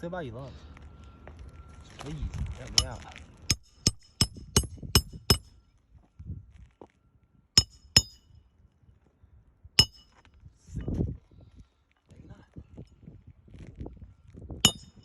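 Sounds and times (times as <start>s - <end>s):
hammer striking metal: 2.7s - 5.6s, 7.6s - 8.3s, 9.8s - 10.2s, 14.6s - 15.0s.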